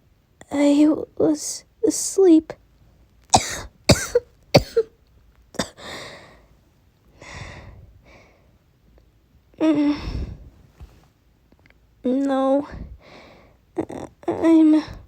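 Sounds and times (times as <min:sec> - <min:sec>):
woman coughing: 0:03.3 - 0:04.9, 0:05.6 - 0:05.8
woman breathing: 0:05.8 - 0:06.5, 0:07.1 - 0:08.6, 0:09.6 - 0:10.6, 0:12.7 - 0:13.6.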